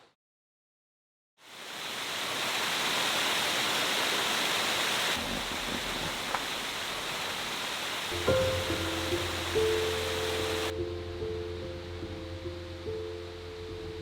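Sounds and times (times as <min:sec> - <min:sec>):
water rushing: 0:01.4 - 0:10.8.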